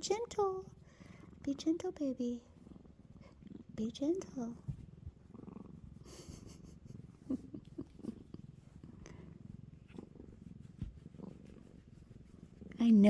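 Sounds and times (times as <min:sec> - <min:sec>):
cat purring: 0:00.0 - 0:13.0
faint clicks and rustles: 0:04.2 - 0:12.8.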